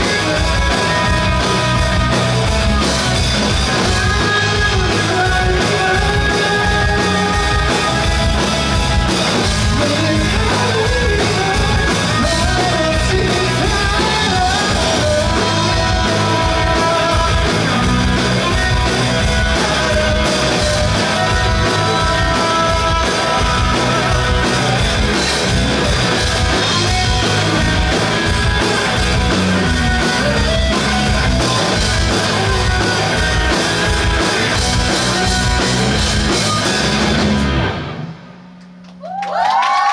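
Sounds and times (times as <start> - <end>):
drum kit beat: 0.0 - 37.7
electric guitars: 0.0 - 38.4
person singing: 3.8 - 8.3, 9.5 - 25.2.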